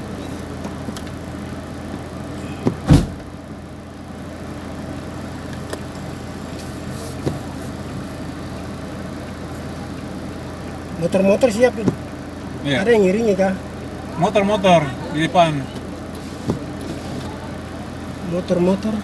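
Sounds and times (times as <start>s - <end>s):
vehicle engine humming: 0.0s - 19.0s
loud thump: 2.6s - 3.3s
faint knocks: 11.8s - 12.2s.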